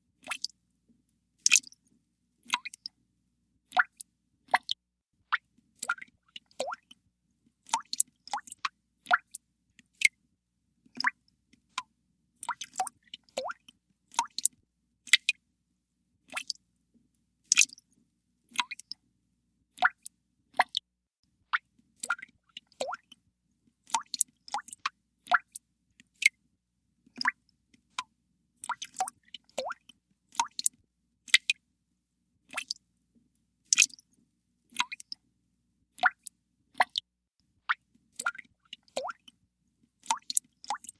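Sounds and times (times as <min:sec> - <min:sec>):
water drops plopping into water: 0:00.2 - 0:00.6, 0:01.4 - 0:01.8, 0:02.5 - 0:03.0, 0:03.7 - 0:07.0, 0:07.6 - 0:10.2, 0:11.0 - 0:15.4, 0:16.3 - 0:16.6, 0:17.5 - 0:17.8, 0:19.8 - 0:20.9, 0:21.5 - 0:23.2, 0:23.9 - 0:25.6, 0:27.2 - 0:27.4, 0:28.0 - 0:31.6, 0:32.5 - 0:32.8, 0:33.7 - 0:34.0, 0:34.8 - 0:35.2, 0:36.0 - 0:37.1, 0:37.7 - 0:39.4, 0:40.0 - 0:40.9.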